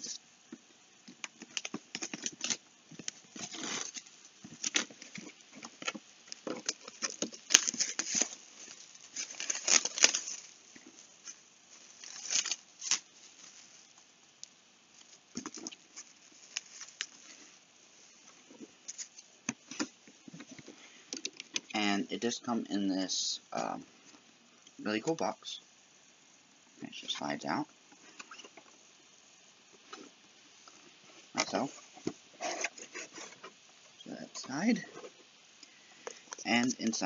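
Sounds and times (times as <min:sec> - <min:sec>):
packaging rustling and tearing: 0:01.2 - 0:14.0, 0:15.0 - 0:17.6.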